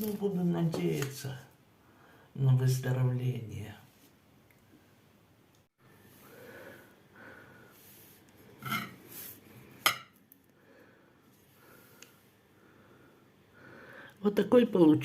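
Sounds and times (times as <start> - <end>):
quiet breathing: 1.7 - 2.4, 5.8 - 9.8, 10.4 - 14.2
kitchen handling noises: 9.9 - 10.1.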